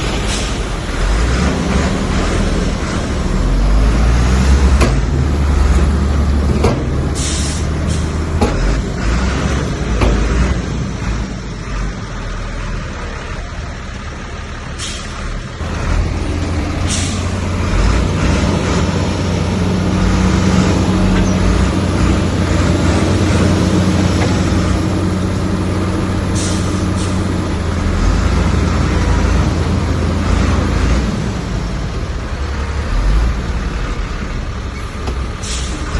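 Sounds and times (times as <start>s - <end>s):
heavy diesel engine running: 0.0s - 35.9s
short hisses: 7.2s - 8.2s, 14.8s - 15.2s.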